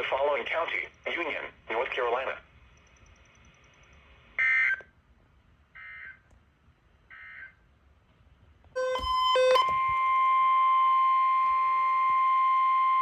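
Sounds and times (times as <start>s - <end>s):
steady alert tone: 8.8s - 9.8s
quick electronic beeps: 8.8s - 9.9s.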